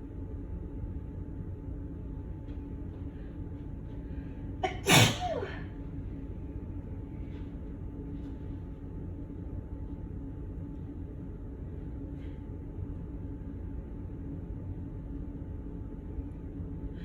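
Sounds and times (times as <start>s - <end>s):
low background hum: 0.0s - 17.0s
person sneezing: 4.6s - 5.7s.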